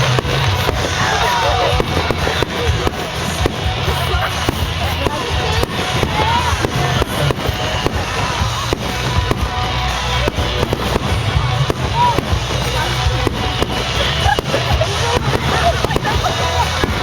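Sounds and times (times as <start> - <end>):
continuous low rumble: 0.0 - 17.0
fireworks bangs and crackles: 0.0 - 17.0.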